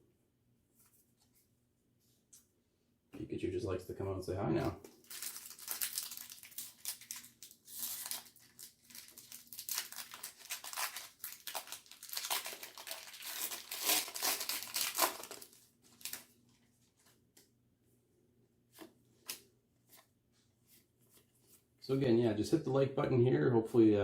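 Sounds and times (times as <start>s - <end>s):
foil wrapper crinkling: 4.9s - 17.2s.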